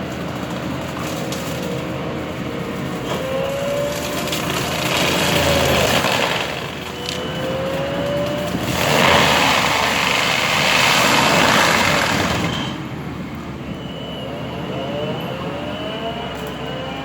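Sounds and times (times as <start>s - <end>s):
mulcher grinding wood: 0.0s - 12.9s
machine whine: 1.0s - 17.0s.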